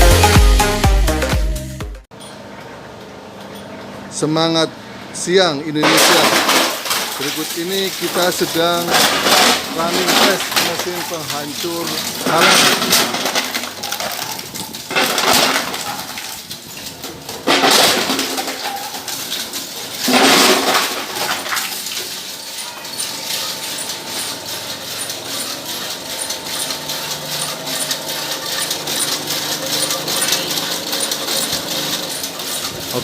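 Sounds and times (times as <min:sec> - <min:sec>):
shredder crushing tin cans: 0:05.8 - 0:33.0.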